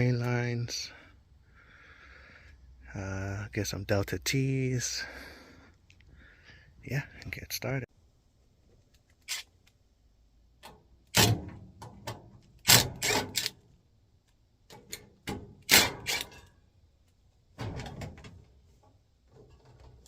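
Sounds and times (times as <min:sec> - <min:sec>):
knocks and rattles of air conditioner: 0:17.6 - 0:18.6.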